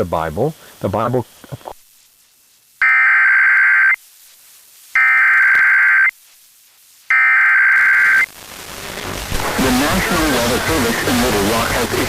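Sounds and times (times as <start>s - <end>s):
shrill digital warbling bursts: 7.1s - 8.2s.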